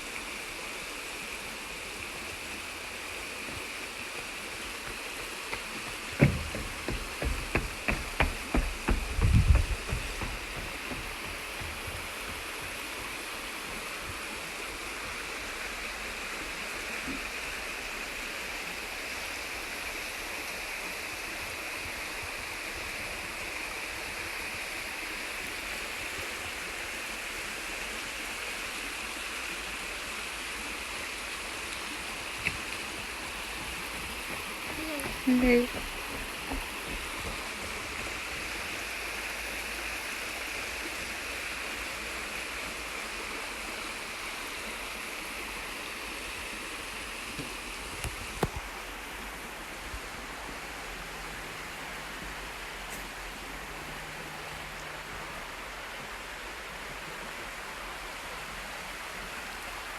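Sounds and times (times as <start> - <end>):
running water: 0.0 - 59.9
sharp knocks and low thumps: 3.5 - 12.8, 32.4 - 38.5.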